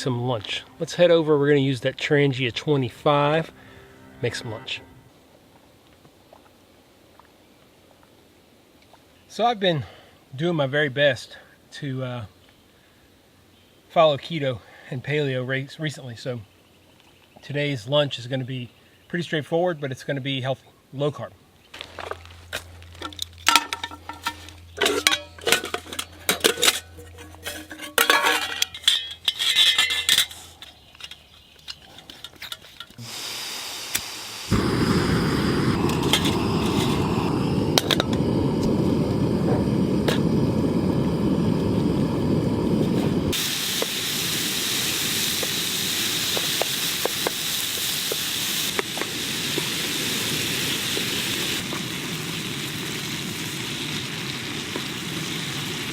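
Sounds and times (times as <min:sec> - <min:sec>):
pots clinking and clattering: 0:23.0 - 0:33.0
higher thinner hiss: 0:33.0 - 0:55.9
loud steady hiss: 0:33.0 - 0:55.9.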